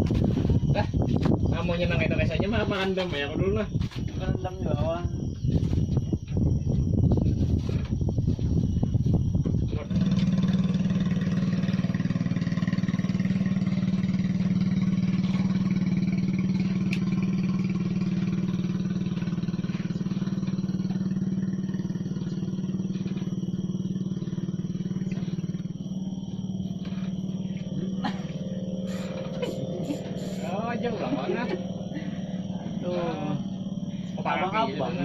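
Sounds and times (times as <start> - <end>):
small engine humming: 9.8 - 35.0.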